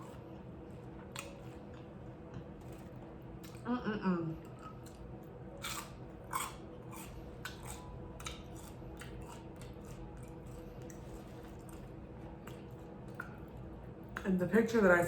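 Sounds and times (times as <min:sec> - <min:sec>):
faint steady hum: 0:00.0 - 0:15.0
chewing with wet mouth clicks: 0:01.0 - 0:03.7, 0:05.6 - 0:14.2.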